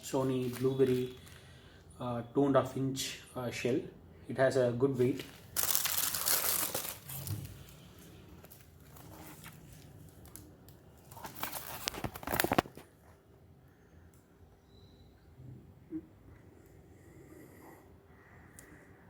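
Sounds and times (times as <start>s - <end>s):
wrapping crinkling and rustling: 0.0s - 1.5s, 5.0s - 13.1s.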